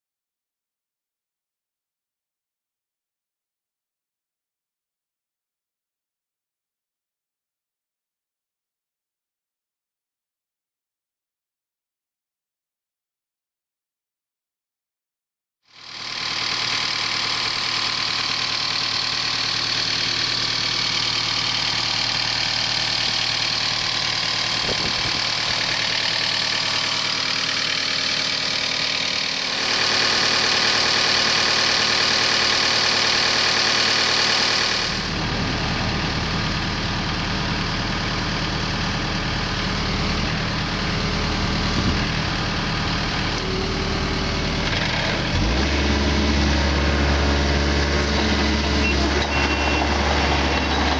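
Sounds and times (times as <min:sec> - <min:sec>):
excavator diesel engine running: 0:15.8 - 0:50.9.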